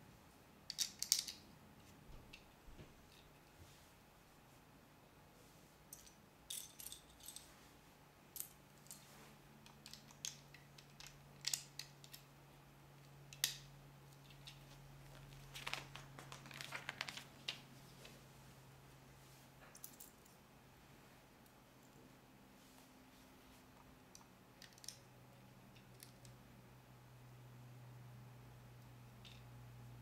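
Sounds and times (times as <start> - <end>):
faint steady hum: 0.0 - 30.0
plastic pieces clicking: 0.7 - 1.4, 9.6 - 12.2, 24.6 - 25.0.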